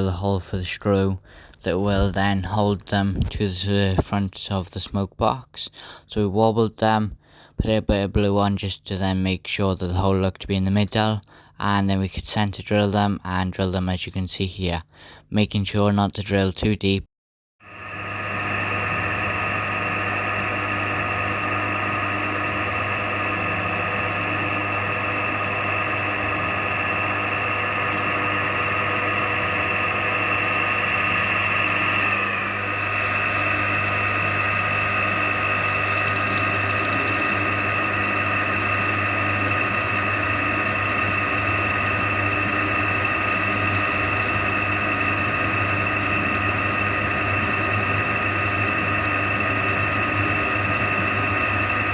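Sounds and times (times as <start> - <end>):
machine tool drilling: 18.9 - 51.9.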